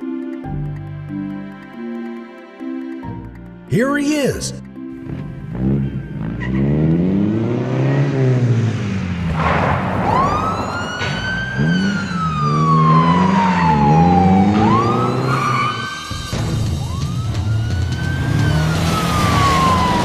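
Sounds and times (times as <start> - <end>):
car engine revving: 4.8 - 20.0
police siren wailing: 10.0 - 20.0.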